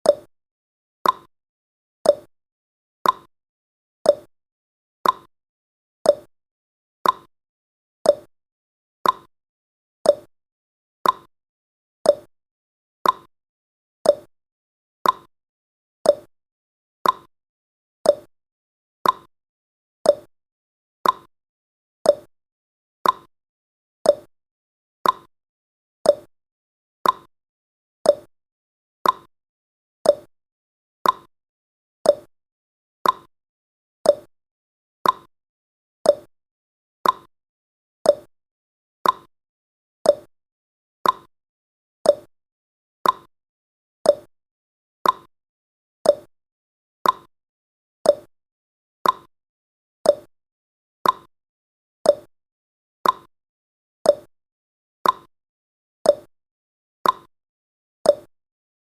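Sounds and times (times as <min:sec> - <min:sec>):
timer ticking: 0:00.0 - 0:00.3, 0:01.0 - 0:01.3, 0:02.1 - 0:02.3, 0:03.0 - 0:03.3, 0:04.1 - 0:04.3, 0:05.0 - 0:05.3, 0:06.1 - 0:06.3, 0:07.0 - 0:07.3, 0:08.1 - 0:08.3, 0:09.0 - 0:09.3, 0:10.1 - 0:10.3, 0:11.0 - 0:11.3, 0:12.1 - 0:12.3, 0:13.0 - 0:13.3, 0:14.1 - 0:14.3, 0:15.0 - 0:15.3, 0:16.1 - 0:16.3, 0:17.0 - 0:17.3, 0:18.1 - 0:18.3, 0:19.0 - 0:19.3, 0:20.1 - 0:20.3, 0:21.0 - 0:21.3, 0:22.1 - 0:22.3, 0:23.0 - 0:23.3, 0:24.1 - 0:24.3, 0:25.0 - 0:25.3, 0:26.1 - 0:26.3, 0:27.0 - 0:27.3, 0:28.1 - 0:28.3, 0:29.0 - 0:29.3, 0:30.0 - 0:30.3, 0:31.0 - 0:31.3, 0:32.0 - 0:32.3, 0:33.0 - 0:33.3, 0:34.1 - 0:34.3, 0:35.0 - 0:35.3, 0:36.0 - 0:36.3, 0:37.0 - 0:37.3, 0:38.1 - 0:38.3, 0:39.0 - 0:39.3, 0:40.0 - 0:40.3, 0:41.0 - 0:41.3, 0:42.0 - 0:42.3, 0:43.0 - 0:43.3, 0:44.1 - 0:44.3, 0:45.0 - 0:45.3, 0:46.0 - 0:46.3, 0:47.0 - 0:47.3, 0:48.1 - 0:48.3, 0:49.0 - 0:49.3, 0:50.1 - 0:50.3, 0:51.0 - 0:51.3, 0:52.1 - 0:52.3, 0:53.0 - 0:53.3, 0:54.1 - 0:54.3, 0:55.0 - 0:55.3, 0:56.1 - 0:56.3, 0:57.0 - 0:57.3, 0:58.1 - 0:58.3.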